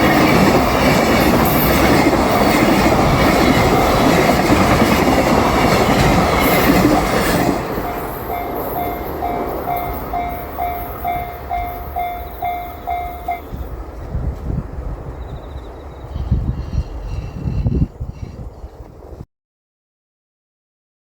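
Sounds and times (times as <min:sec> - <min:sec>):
crossing warning bell ringing: 0:00.0 - 0:13.8
freight train rumbling and clacking: 0:00.0 - 0:19.2.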